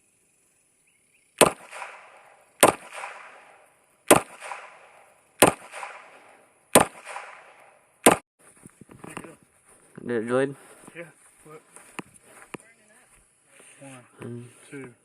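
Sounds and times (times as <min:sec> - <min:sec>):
gunshots with echo: 0:01.4 - 0:08.2.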